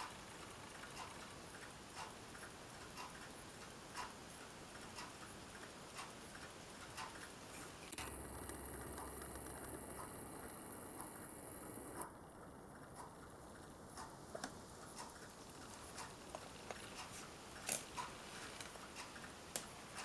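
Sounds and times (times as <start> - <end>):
low hum and hiss: 0.0 - 20.0
pocket watch ticking: 8.0 - 12.1.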